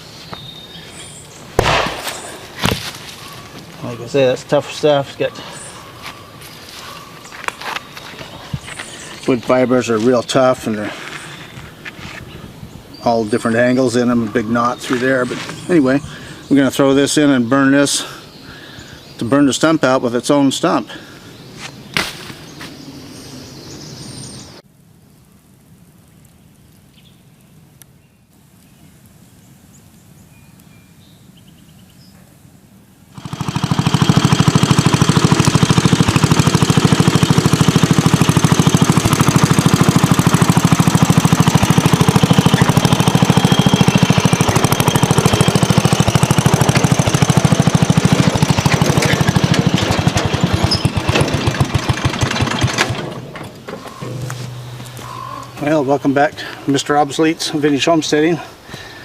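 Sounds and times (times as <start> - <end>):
small gasoline engine running: 33.2 - 54.2.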